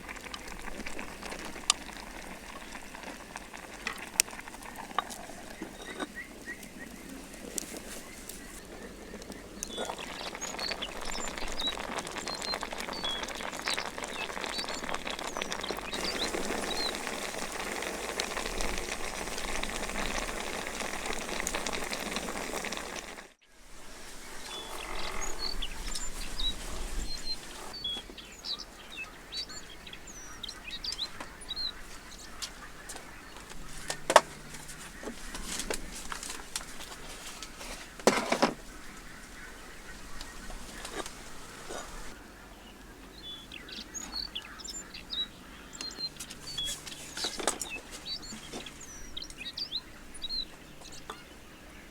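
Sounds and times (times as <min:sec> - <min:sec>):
background hiss: 0:00.0 - 0:33.2, 0:35.3 - 0:51.0
birds chirping: 0:00.0 - 0:51.9.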